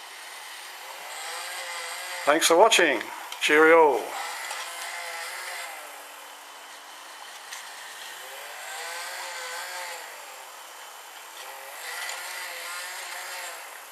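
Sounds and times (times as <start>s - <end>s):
toy motor whining: 0.1s - 2.5s, 4.0s - 6.2s, 7.4s - 10.5s, 11.3s - 13.9s.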